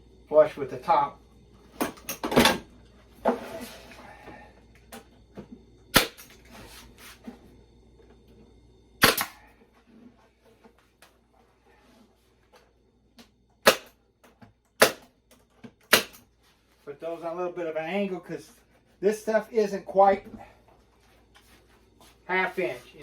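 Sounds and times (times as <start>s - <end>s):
staple gun firing: 9.0s - 9.4s, 13.6s - 13.9s, 14.8s - 15.1s, 15.9s - 16.2s.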